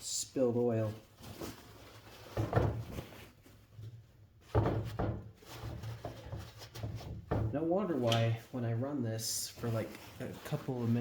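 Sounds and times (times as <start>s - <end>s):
paper rustling: 9.4s - 11.0s.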